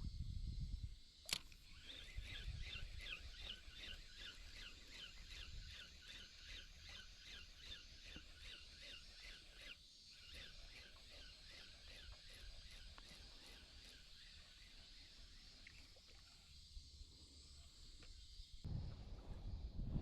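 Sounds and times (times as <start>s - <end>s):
wind rumble on microphone: 0.0s - 1.1s, 18.6s - 20.0s
bird chirping: 1.6s - 16.6s.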